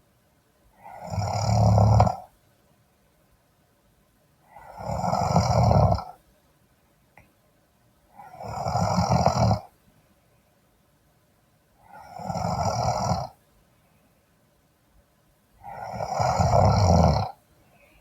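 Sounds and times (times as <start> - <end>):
quiet breathing: 0.6 - 2.4, 4.4 - 6.3, 8.0 - 10.7, 11.7 - 14.4, 15.5 - 18.0
man snoring: 0.8 - 2.3, 4.6 - 6.2, 8.2 - 9.7, 11.9 - 13.4, 15.6 - 17.4.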